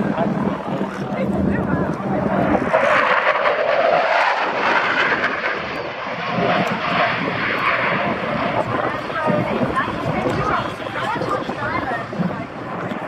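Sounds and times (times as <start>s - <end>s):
jet aircraft flying overhead: 0.0s - 13.0s.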